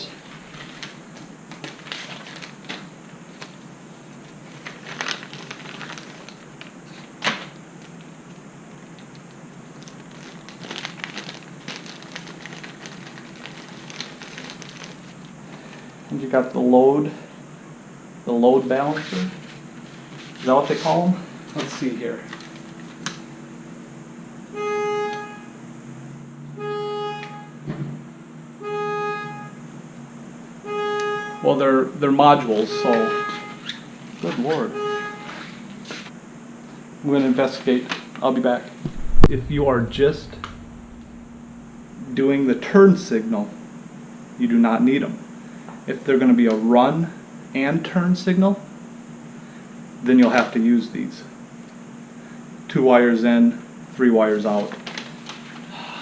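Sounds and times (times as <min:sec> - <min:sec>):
plastic packaging crinkling: 0:00.4 - 0:03.6, 0:04.3 - 0:08.1, 0:09.1 - 0:15.3.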